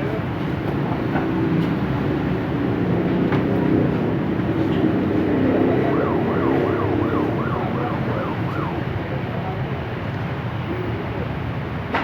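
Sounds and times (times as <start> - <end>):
siren yelping: 5.2 - 9.2.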